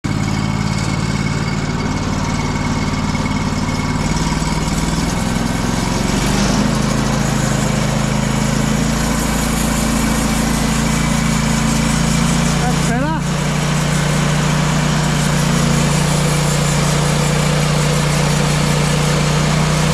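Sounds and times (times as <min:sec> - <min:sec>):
engine running: 0:00.0 - 0:19.9.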